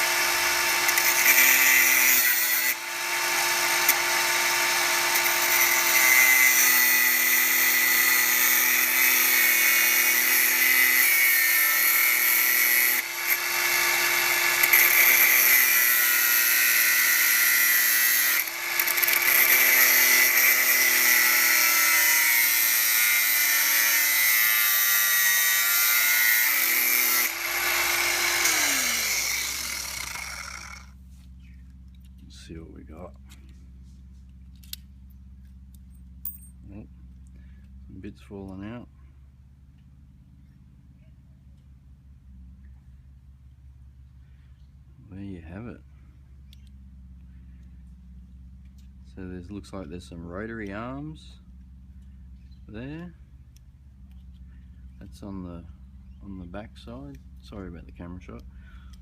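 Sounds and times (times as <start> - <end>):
power tool cutting metal: 0.0 - 31.0.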